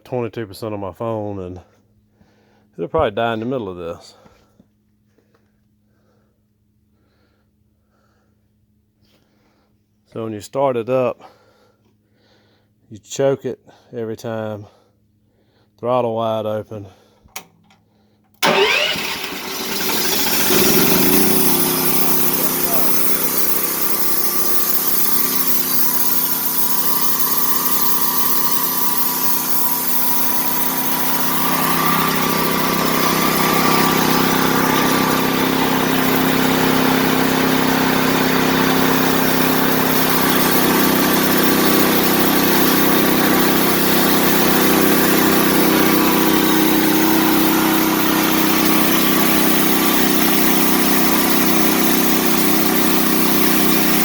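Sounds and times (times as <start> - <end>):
sawmill engine running: 18.4 - 54.0.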